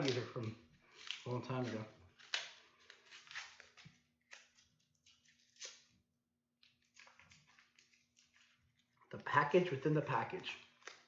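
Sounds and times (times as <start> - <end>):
packaging being unwrapped: 0.0 - 5.9, 6.6 - 8.9.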